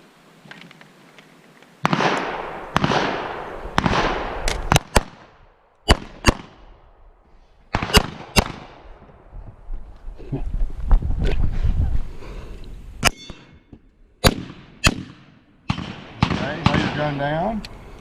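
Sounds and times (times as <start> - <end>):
pistol shots echoing: 1.8 - 6.7, 7.7 - 8.8, 14.2 - 17.2.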